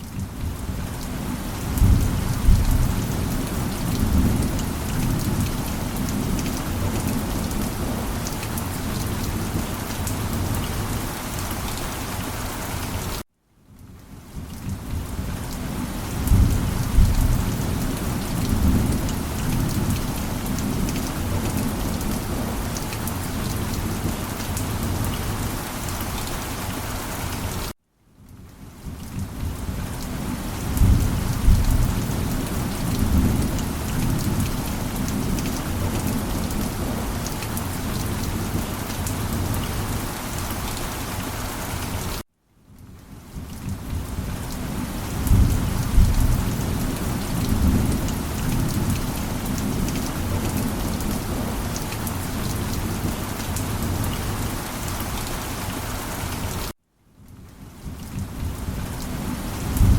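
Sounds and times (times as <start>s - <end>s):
heavy rain: 0.0s - 13.2s, 13.8s - 42.2s, 42.8s - 59.9s
thunder rumbling: 1.6s - 8.2s, 30.6s - 37.3s, 59.6s - 59.9s.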